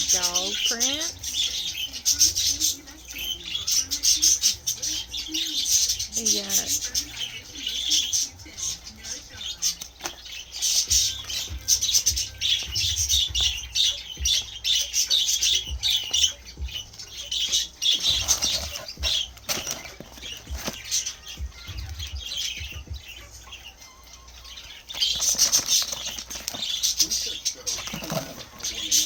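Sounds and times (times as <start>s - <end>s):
packaging crinkling: 18.0s - 21.9s, 24.9s - 29.0s.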